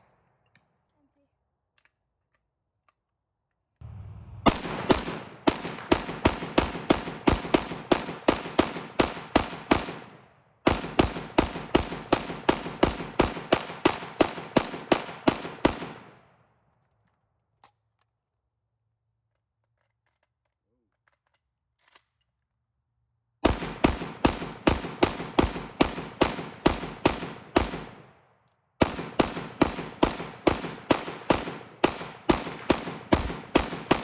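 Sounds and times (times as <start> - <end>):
gunshot echo: 3.8 - 10.1
rifle firing rapid shots: 4.4 - 16.3, 23.4 - 28.2, 28.8 - 34.0.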